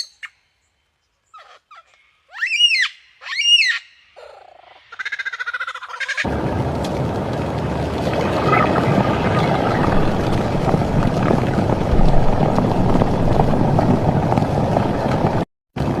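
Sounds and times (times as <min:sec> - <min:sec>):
loud steady rumbling: 0:06.3 - 0:16.0.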